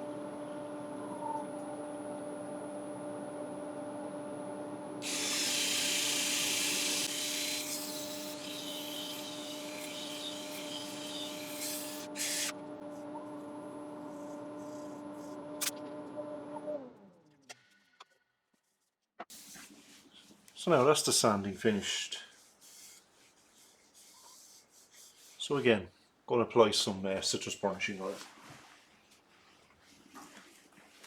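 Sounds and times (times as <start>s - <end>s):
sandpaper rubbing hiss: 5.0s - 12.5s
wood lathe humming: 5.0s - 12.6s.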